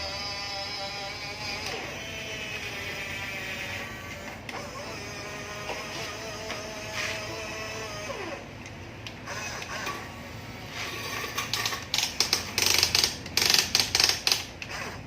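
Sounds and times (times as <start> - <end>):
small electric motor whining: 0.0 - 8.5, 9.2 - 11.6.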